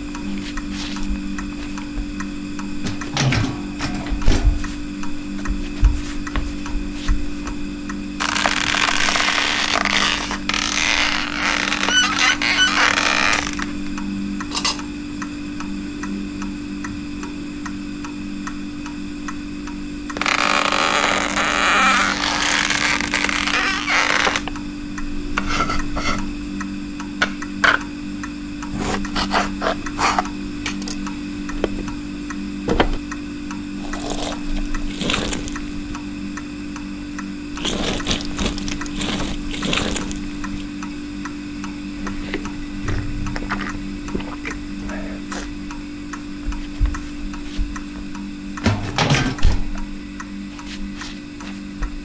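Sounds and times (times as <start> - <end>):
steady low hum: 0.0 - 52.0
water splashing and pouring: 33.8 - 35.6, 37.6 - 40.2.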